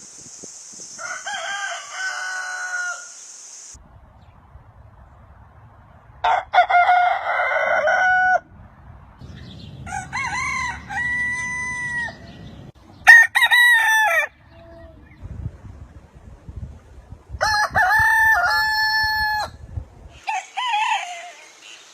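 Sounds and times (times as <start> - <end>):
rooster crowing: 1.0 - 3.2, 6.2 - 8.5, 9.8 - 12.4, 13.0 - 14.4, 17.4 - 19.6, 20.2 - 21.5.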